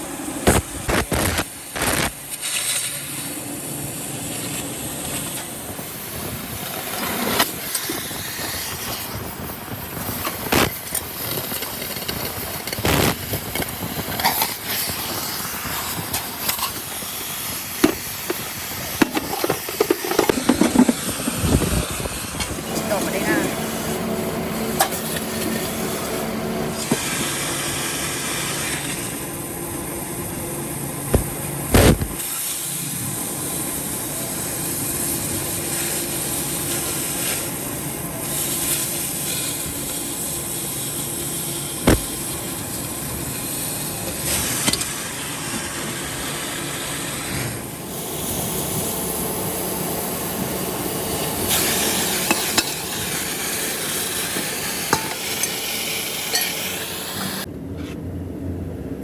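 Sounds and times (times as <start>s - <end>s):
workshop clatter and hiss: 0.0s - 58.1s.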